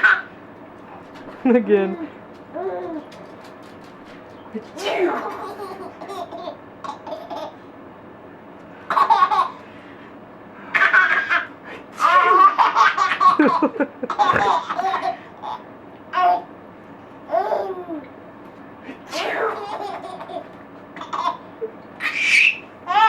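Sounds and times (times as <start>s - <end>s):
baby laughing: 0.0s - 0.3s, 2.0s - 3.2s, 4.8s - 7.6s, 8.9s - 9.6s, 10.7s - 16.5s, 17.3s - 18.1s, 19.1s - 23.0s.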